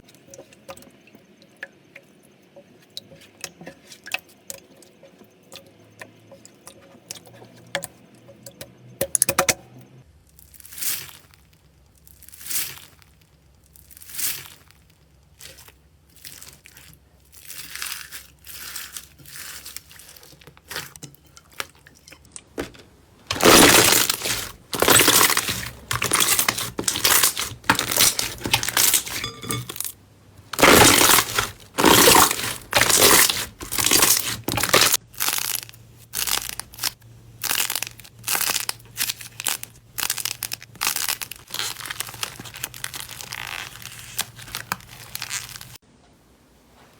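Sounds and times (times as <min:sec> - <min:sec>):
slime crackling and crunching: 0:10.3 - 0:29.9, 0:30.5 - 0:45.8.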